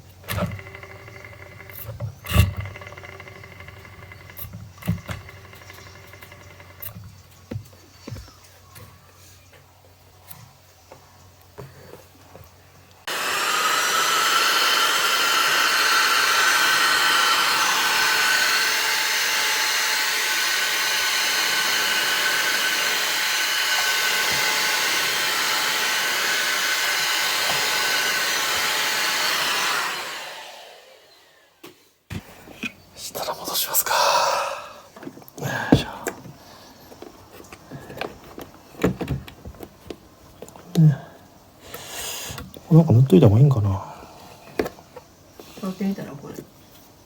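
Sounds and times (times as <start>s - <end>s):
dishwasher pump whirring: 0.0s - 7.6s, 13.1s - 31.0s.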